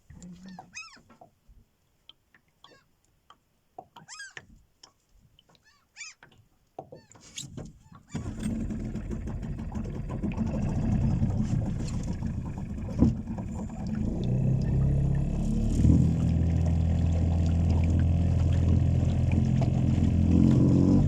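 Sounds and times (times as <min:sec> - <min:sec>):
seagull mewing cries: 0:00.5 - 0:01.0, 0:04.0 - 0:04.4, 0:05.6 - 0:06.3
outboard motor running: 0:08.1 - 0:21.0.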